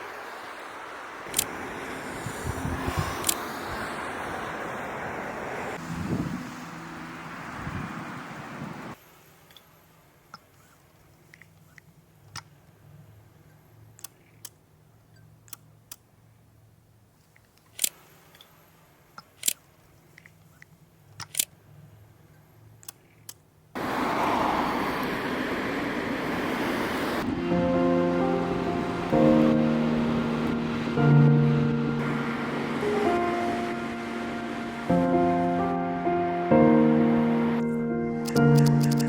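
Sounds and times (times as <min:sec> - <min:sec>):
sea surf rushing: 0:00.0 - 0:09.2, 0:23.8 - 0:37.7
camera shutter clicks: 0:17.7 - 0:18.0, 0:38.2 - 0:39.0.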